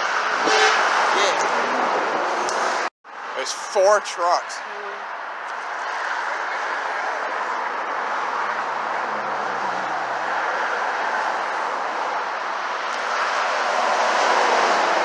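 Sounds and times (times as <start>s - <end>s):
traffic tyre and air rush: 0.0s - 15.0s.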